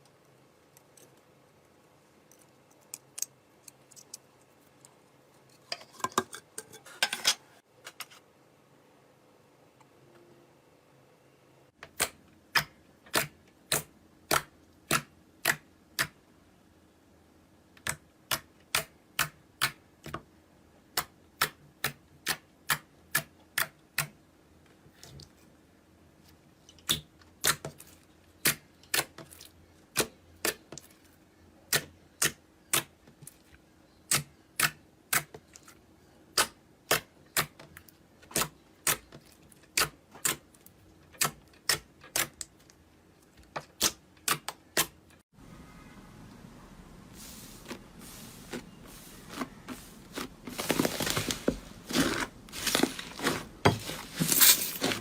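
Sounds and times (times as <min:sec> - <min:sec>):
knife cutting dry soap: 0:48.5 - 0:55.0.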